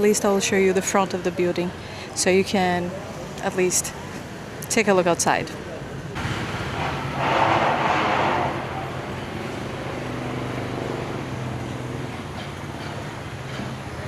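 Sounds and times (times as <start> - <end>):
motorbike engine running: 6.2 - 13.9.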